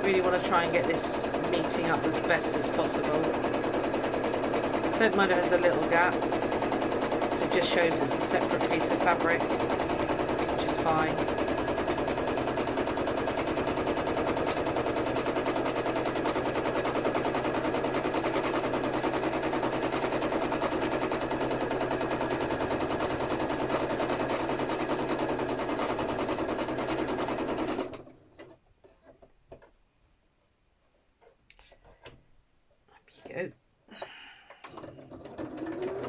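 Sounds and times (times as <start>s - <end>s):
sewing machine stitching: 0.0s - 29.2s, 34.6s - 36.0s.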